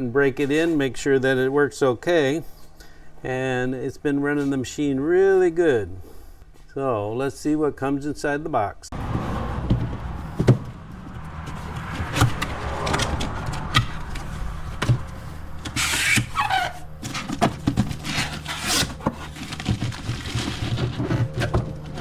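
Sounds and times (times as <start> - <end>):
low engine hum: 8.9 - 22.0
knocks and clicks: 9.0 - 15.8
rustling packaging: 13.6 - 22.0
cardboard box being opened: 13.8 - 22.0.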